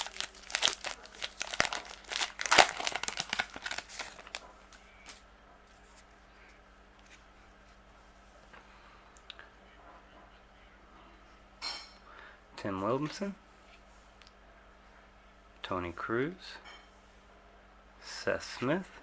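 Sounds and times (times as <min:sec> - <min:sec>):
foil wrapper tearing and crinkling: 0:00.0 - 0:04.4.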